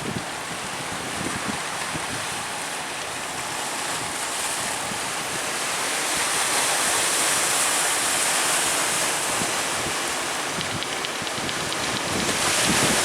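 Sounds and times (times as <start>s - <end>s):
surf breaking and rushing: 0.0s - 13.0s
wind buffeting microphone: 8.8s - 13.0s.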